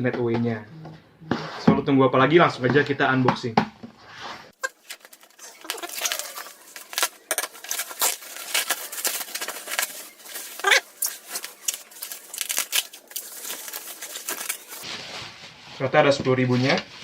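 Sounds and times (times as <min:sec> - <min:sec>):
packaging tearing and crinkling: 0:04.6 - 0:15.2.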